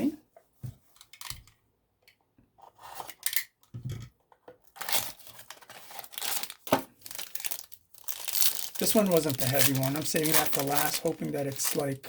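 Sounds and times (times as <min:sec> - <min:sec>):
packaging tearing and crinkling: 0:04.8 - 0:12.0.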